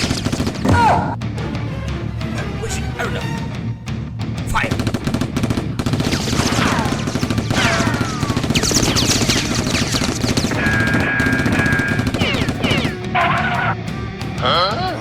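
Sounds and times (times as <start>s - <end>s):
gunfire bursts: 0.0s - 0.8s, 4.5s - 13.6s
music bed: 10.6s - 15.0s.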